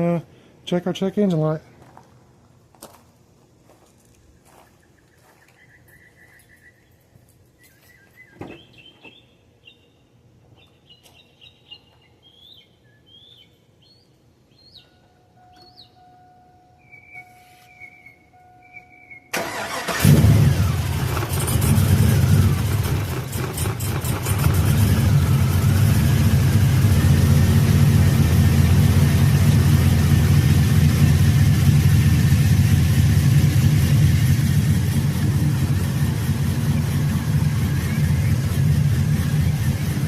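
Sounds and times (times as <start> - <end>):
engine cranking: 19.3 - 27.1
engine idling: 19.4 - 40.0.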